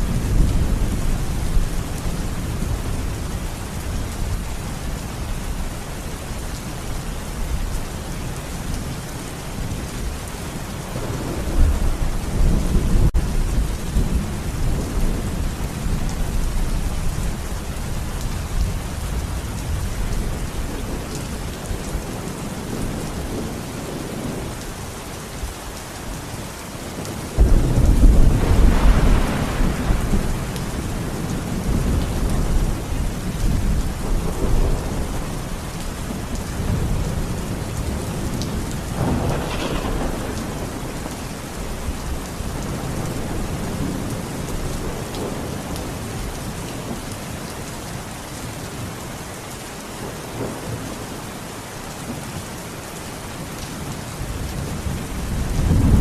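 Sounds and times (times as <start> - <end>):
steady rain: 0.0 - 56.0
thunder rumbling: 8.8 - 24.8, 27.0 - 46.9, 54.2 - 56.0.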